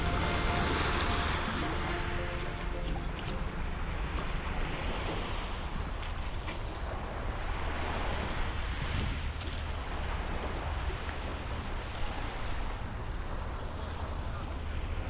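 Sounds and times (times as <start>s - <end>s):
background music: 0.0s - 5.0s
waves washing against shore: 0.0s - 11.5s.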